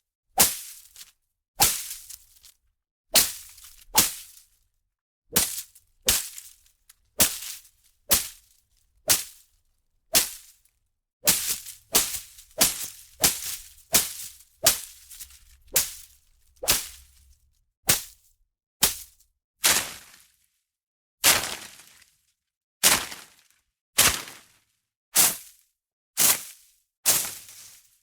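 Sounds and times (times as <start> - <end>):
leaves being whipped swishing: 3.2 - 4.3, 10.2 - 10.5, 11.2 - 17.0, 24.0 - 24.4.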